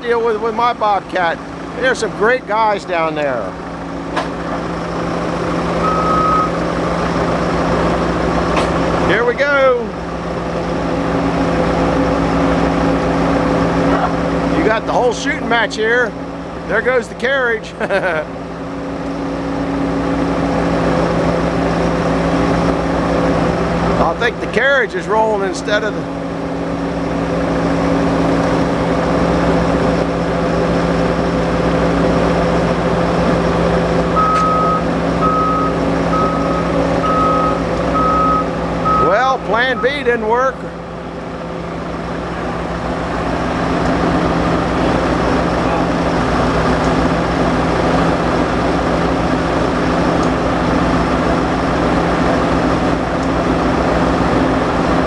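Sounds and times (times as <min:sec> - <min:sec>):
skid-steer loader running: 0:00.0 - 0:55.0
reverse alarm beeping: 0:05.8 - 0:06.7, 0:34.1 - 0:40.2.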